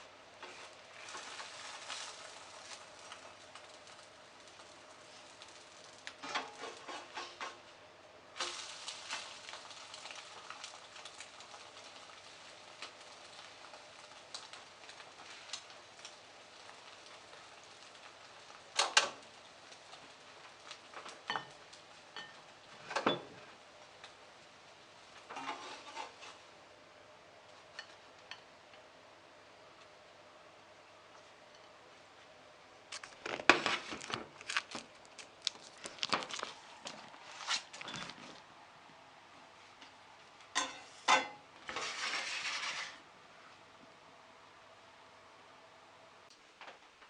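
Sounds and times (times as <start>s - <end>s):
food sizzling in a frying pan: 0.0s - 32.2s, 40.4s - 43.1s.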